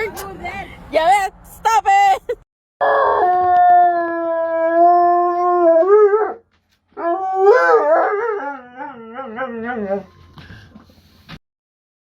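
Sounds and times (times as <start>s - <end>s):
dog howling: 2.8s - 6.4s, 7.0s - 10.1s.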